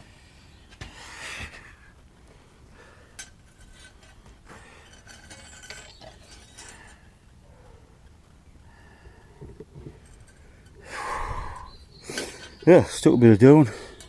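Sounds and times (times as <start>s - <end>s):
plastic parts clinking and scraping: 3.2s - 7.1s.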